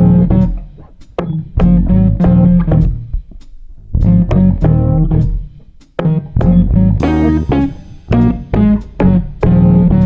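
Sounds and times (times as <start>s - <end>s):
plucked guitar notes: 0.0s - 3.1s, 6.1s - 10.0s
bass line: 0.0s - 5.6s, 6.2s - 10.0s.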